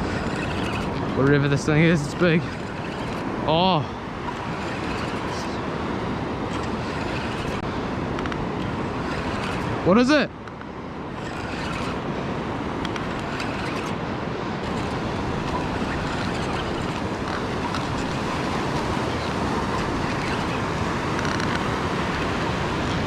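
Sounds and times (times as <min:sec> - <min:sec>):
surf rushing: 0:00.0 - 0:23.0
wind: 0:00.0 - 0:23.0.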